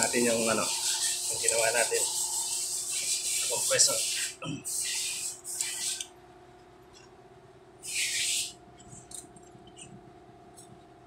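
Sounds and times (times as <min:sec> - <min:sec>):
faint steady hum: 0:00.0 - 0:11.0
short hisses: 0:07.8 - 0:08.6.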